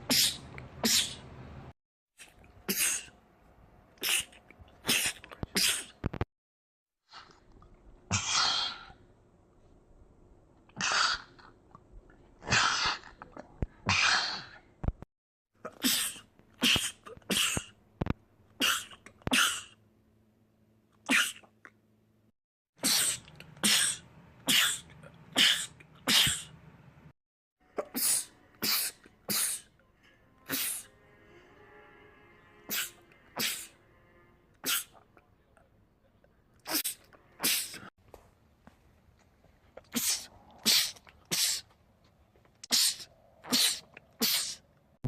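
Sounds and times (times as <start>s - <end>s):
men sneezing: 27.8s - 29.7s, 30.5s - 30.9s, 32.7s - 33.7s, 34.6s - 35.0s, 36.7s - 37.9s, 42.7s - 44.6s.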